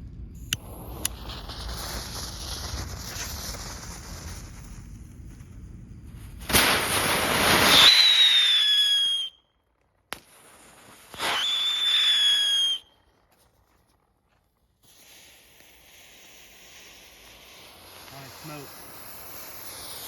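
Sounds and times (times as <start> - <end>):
firework hissing: 0.3 - 9.3, 10.2 - 20.0
firework whistling bursts: 0.3 - 9.5, 10.2 - 13.9, 14.8 - 20.0.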